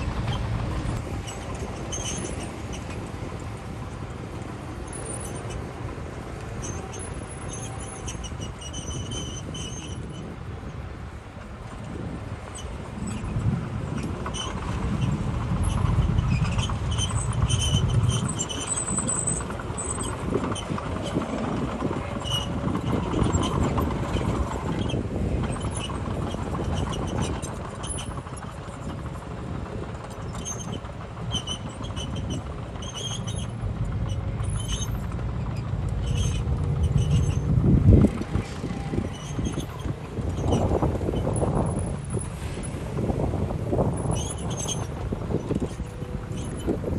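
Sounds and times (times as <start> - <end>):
high metallic squeaks: 0.0 - 3.1, 6.6 - 10.3, 14.0 - 21.3, 30.3 - 42.8, 44.0 - 46.8
diesel engine rumbling: 0.0 - 46.9.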